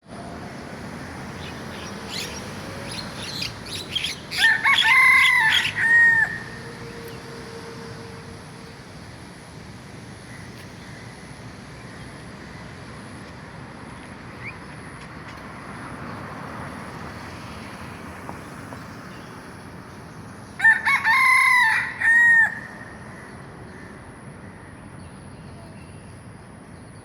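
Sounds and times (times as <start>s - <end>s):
rooster crowing: 4.3s - 7.1s, 20.6s - 23.2s.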